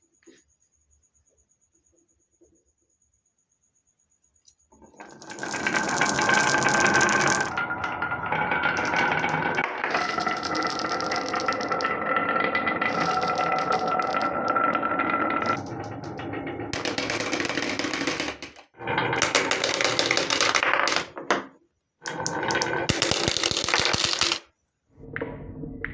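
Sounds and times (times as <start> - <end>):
whirring of rolling marbles: 4.7 - 24.6
marbles clattering down wooden track: 4.8 - 24.5.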